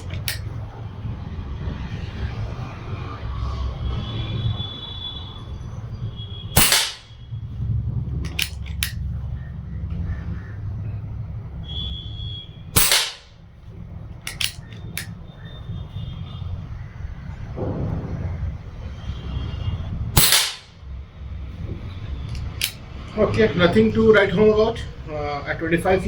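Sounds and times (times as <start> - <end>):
steady low background rumble: 0.0 - 26.0
air rifle shot crack: 6.6 - 7.2, 12.8 - 13.3, 20.2 - 20.8
light clicks: 8.2 - 9.0, 14.2 - 15.1, 22.3 - 22.8.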